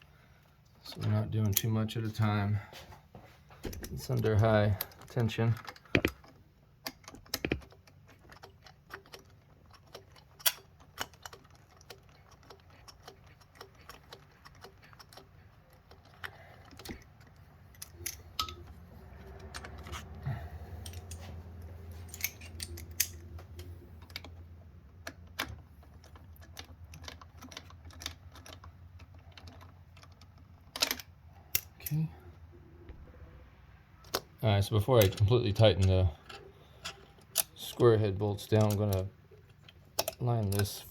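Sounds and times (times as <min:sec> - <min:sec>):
low steady hum: 0:00.0 - 0:40.9
metallic clicks and taps of a tool: 0:03.7 - 0:15.3, 0:40.0 - 0:40.8.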